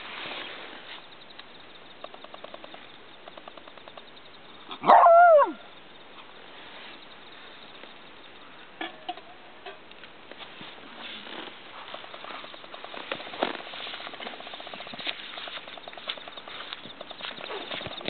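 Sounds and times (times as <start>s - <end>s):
dog barking: 4.7s - 5.6s.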